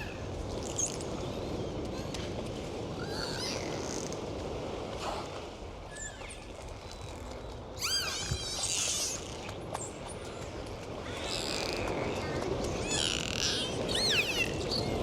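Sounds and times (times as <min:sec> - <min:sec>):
sea noise: 0:00.0 - 0:15.0.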